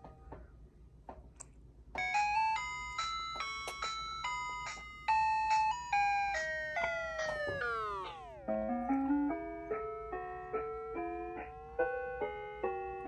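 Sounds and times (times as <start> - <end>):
electronic chiming jingle: 2.0 - 9.6.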